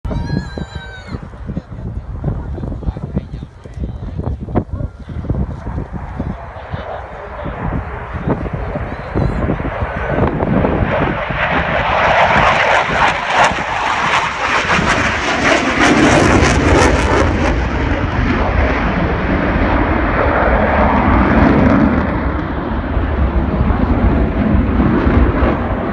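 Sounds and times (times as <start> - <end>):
aircraft engine rush: 0.1 - 25.9.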